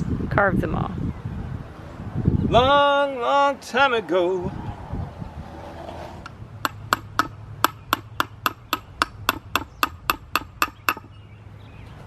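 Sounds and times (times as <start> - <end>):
hammer striking chisel on stone: 6.6 - 11.1.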